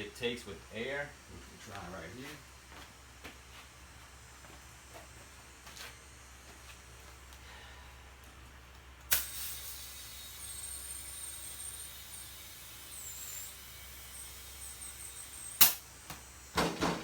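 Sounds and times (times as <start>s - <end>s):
compressed air hissing into tire: 9.1s - 16.7s.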